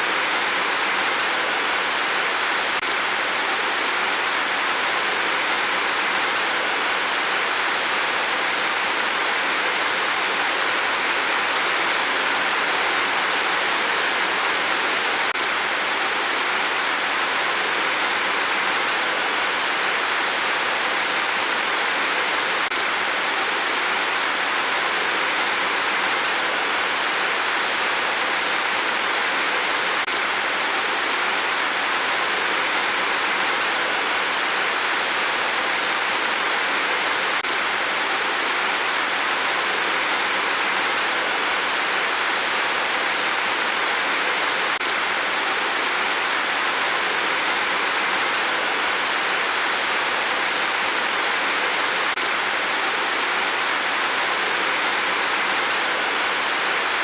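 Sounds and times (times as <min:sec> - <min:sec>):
steady rain hiss: 0:00.0 - 0:57.0.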